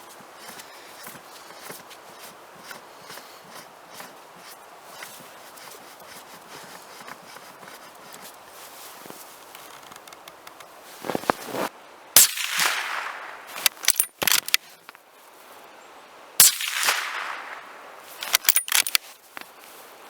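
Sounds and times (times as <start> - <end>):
suppressed rifle shots: 12.2 - 14.6, 16.4 - 19.0
sharp rifle bolt clicks: 12.2 - 14.9, 16.4 - 19.2.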